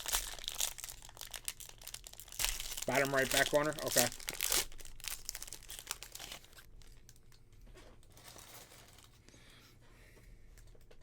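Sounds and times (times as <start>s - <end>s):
cards crinkling and rustling: 0.0s - 7.4s.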